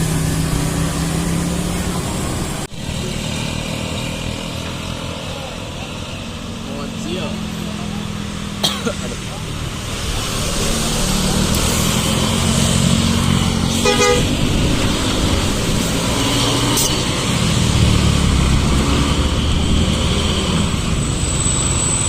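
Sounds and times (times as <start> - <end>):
bus engine running under load: 0.0 - 22.0
short horn blast: 13.7 - 14.5.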